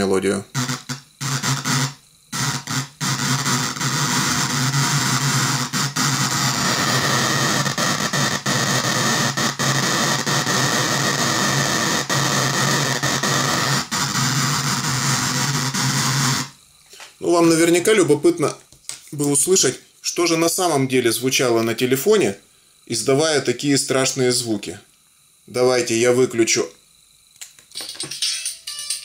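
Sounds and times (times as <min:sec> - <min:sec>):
harsh distorted buzzing music: 0:00.0 - 0:16.6.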